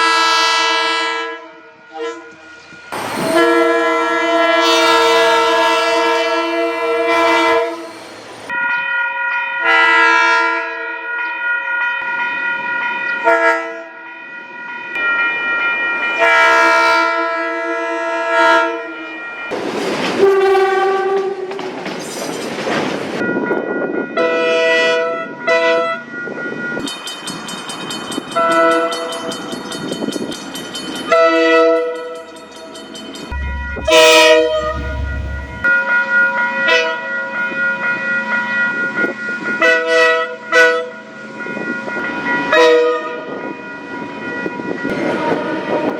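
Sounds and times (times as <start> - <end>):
train air horn blasts: 0.0 - 8.1, 9.6 - 11.0, 16.2 - 19.0, 20.2 - 21.5, 33.3 - 35.7, 44.9 - 45.9
train rushing on rails: 0.0 - 8.9, 12.0 - 37.0, 38.8 - 45.9.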